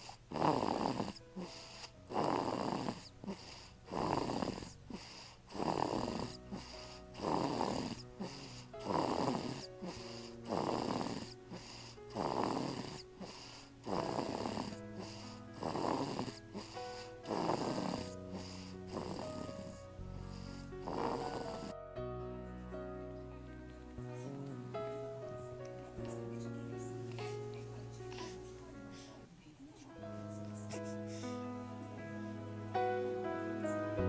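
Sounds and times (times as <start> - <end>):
baby snoring: 0.0 - 21.8, 28.1 - 29.2
soft background music: 0.0 - 34.0.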